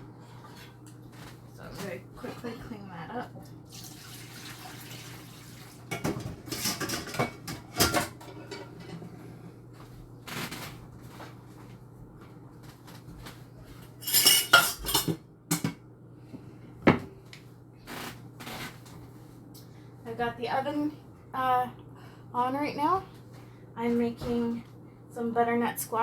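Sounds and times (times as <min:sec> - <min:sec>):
dishes and cutlery clattering: 0:05.9 - 0:09.0, 0:14.0 - 0:15.7.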